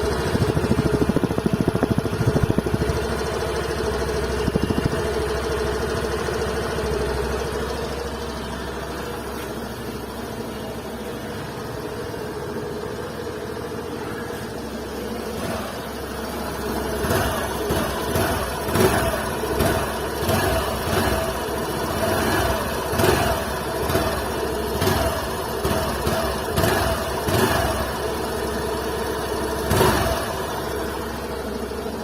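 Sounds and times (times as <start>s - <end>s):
scooter engine idling: 0.0s - 32.0s
throttle blips: 0.3s - 3.0s, 4.3s - 5.1s.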